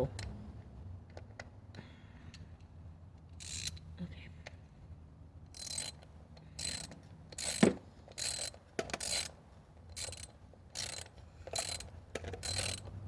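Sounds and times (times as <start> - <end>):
ratchet wrench clicking: 3.4 - 3.8, 5.5 - 12.9.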